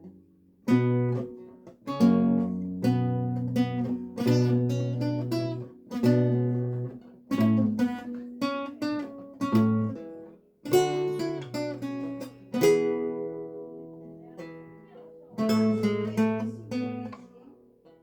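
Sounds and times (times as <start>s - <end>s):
lute plucked notes and chords: 0.0s - 18.0s.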